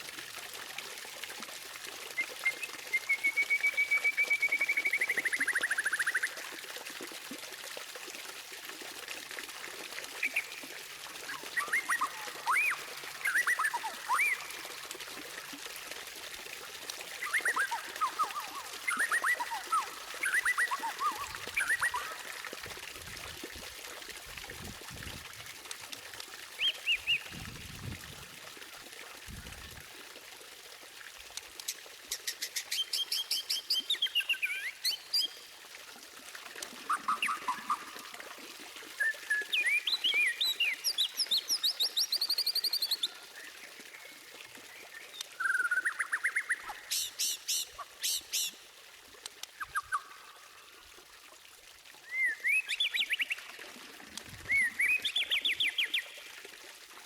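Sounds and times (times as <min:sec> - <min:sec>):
bird singing whistled phrases: 0:02.2 - 0:06.2, 0:11.3 - 0:14.6, 0:17.2 - 0:22.2, 0:45.4 - 0:47.1, 0:52.0 - 0:53.4, 0:54.5 - 0:56.1.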